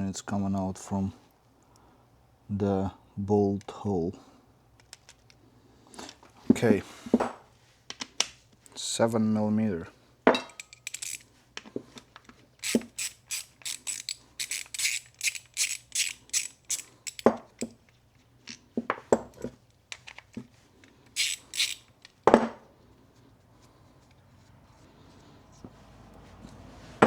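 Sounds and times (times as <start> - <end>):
metal tools clinking: 10.3 - 11.2, 12.6 - 17.7, 21.2 - 22.1
hand ratchet strokes: 10.5 - 11.3, 12.6 - 17.8, 21.1 - 22.2.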